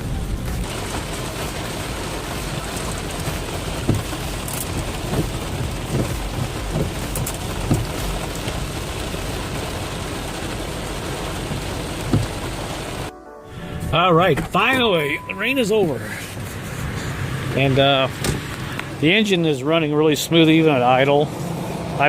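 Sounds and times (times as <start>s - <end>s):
car engine running: 0.0s - 13.1s
heavy rain drumming on car roof: 0.0s - 13.1s, 14.2s - 19.1s
thuds: 12.1s - 12.4s.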